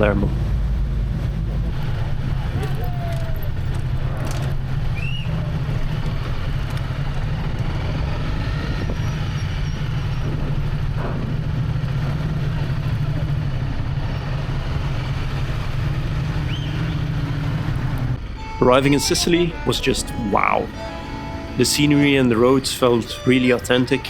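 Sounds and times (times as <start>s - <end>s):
motorcycle engine droning: 0.0s - 24.0s
wind and road noise: 0.0s - 24.0s.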